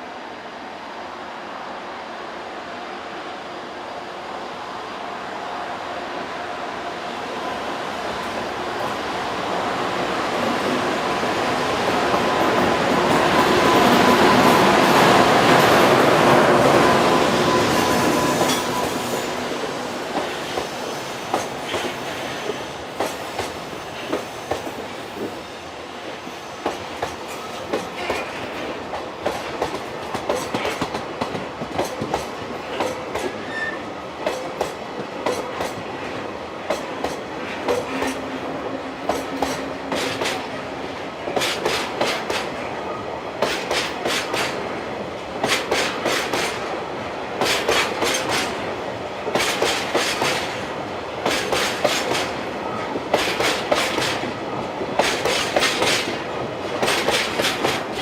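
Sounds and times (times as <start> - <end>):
wheels clacking over rail joints: 51.2 - 58.0.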